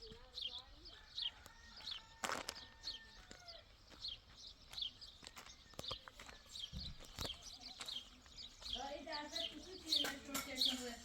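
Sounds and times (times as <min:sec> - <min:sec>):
small bird chirping: 0:02.7 - 0:11.0.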